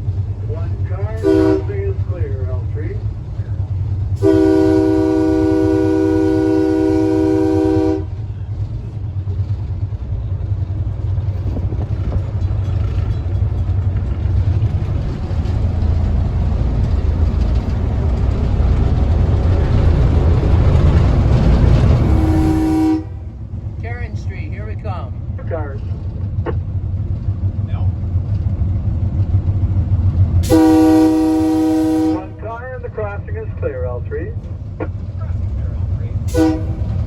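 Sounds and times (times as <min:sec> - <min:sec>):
railway car rumbling on track: 0:00.0 - 0:37.0
train horn blowing: 0:01.2 - 0:01.9, 0:04.2 - 0:08.3, 0:22.0 - 0:23.4, 0:30.4 - 0:32.4, 0:36.3 - 0:37.0.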